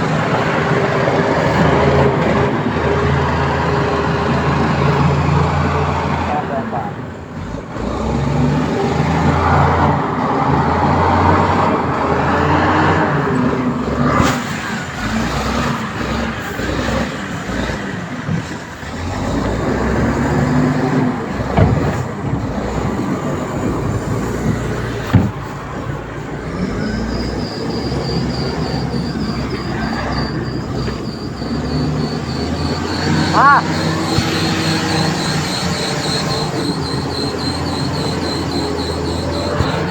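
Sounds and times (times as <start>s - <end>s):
heavy diesel engine running: 0.0s - 39.9s
faint high warbling tone: 27.6s - 39.9s.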